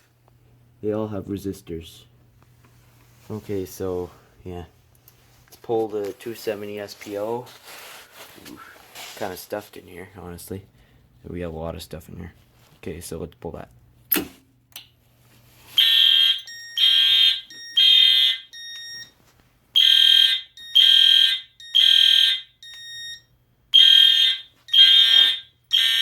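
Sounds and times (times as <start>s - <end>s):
fire alarm horn blasts: 15.8s - 19.0s, 19.8s - 26.0s.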